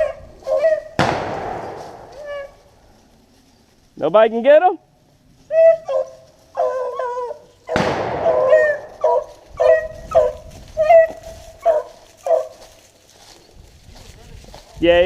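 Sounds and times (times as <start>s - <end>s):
hounds baying: 0.0s - 1.0s, 5.4s - 13.5s
sudden loud crack: 1.0s - 2.3s, 7.7s - 8.8s.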